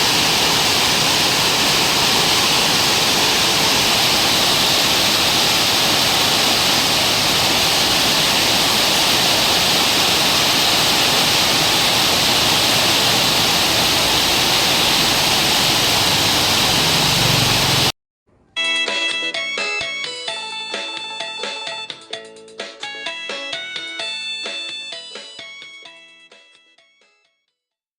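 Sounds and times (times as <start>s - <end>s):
heavy rain: 0.0s - 17.9s.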